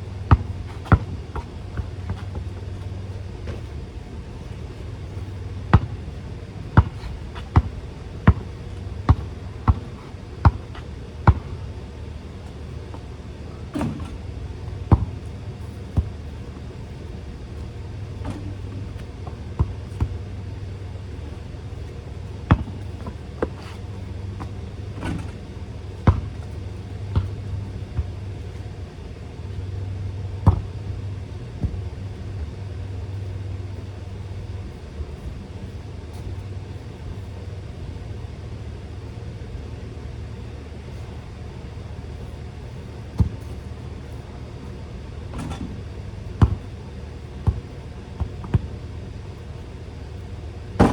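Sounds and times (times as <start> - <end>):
steady low rumble: 0.0 - 50.9
basketball bouncing: 0.1 - 17.0, 18.1 - 20.3, 22.2 - 28.6, 30.4 - 30.9, 43.0 - 43.7, 45.3 - 48.8.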